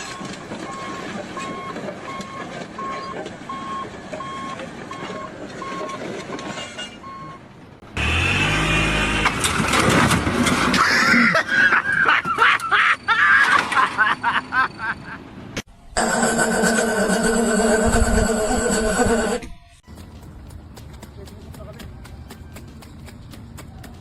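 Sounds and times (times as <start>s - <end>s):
reversing alarm beeps: 0.0s - 6.1s, 6.8s - 7.5s
vehicle engine noise: 0.0s - 10.8s.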